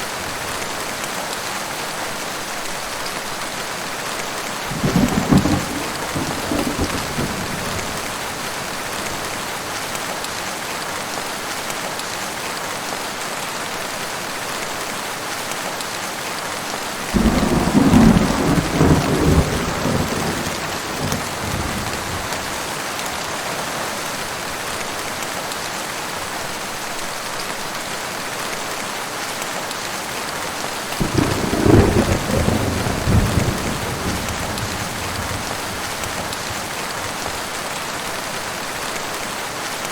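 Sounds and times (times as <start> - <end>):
heavy rain: 0.0 - 39.9
thunder claps: 4.7 - 9.0, 17.2 - 22.8, 31.0 - 37.4.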